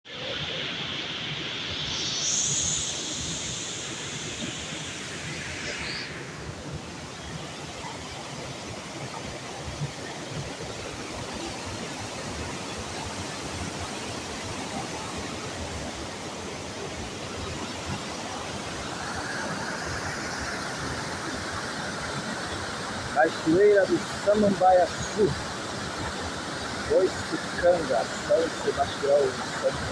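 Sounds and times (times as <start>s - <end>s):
waterfall rushing: 10.6s - 29.9s.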